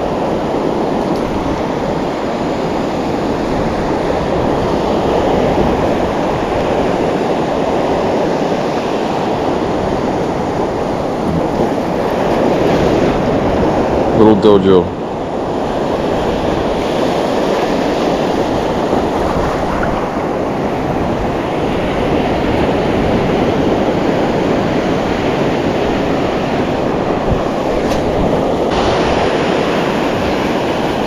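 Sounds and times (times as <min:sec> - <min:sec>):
ocean surf on shore: 0:00.0 - 0:31.0
wind on microphone: 0:00.0 - 0:31.0.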